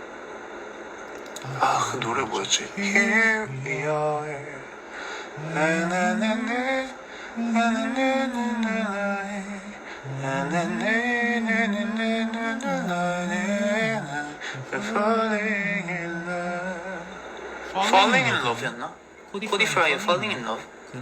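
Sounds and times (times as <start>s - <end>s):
man singing without words: 1.4s - 18.6s.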